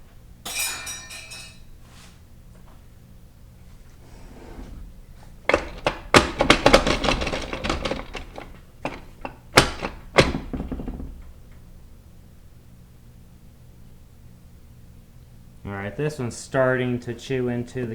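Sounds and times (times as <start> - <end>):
metal parts clattering: 0.5 - 1.6, 5.5 - 11.3
sharp knocks: 5.4 - 11.4.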